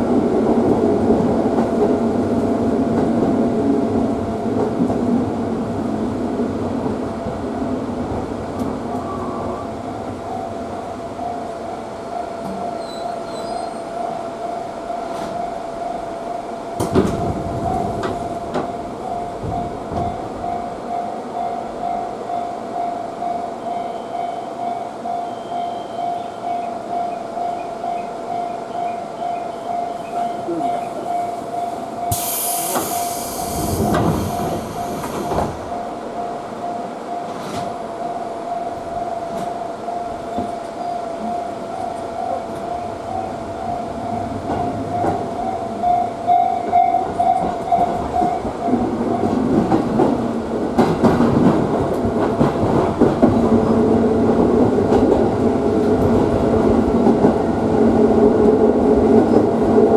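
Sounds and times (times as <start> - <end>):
train running on rails: 0.0 - 59.9
brief hiss: 32.1 - 35.4.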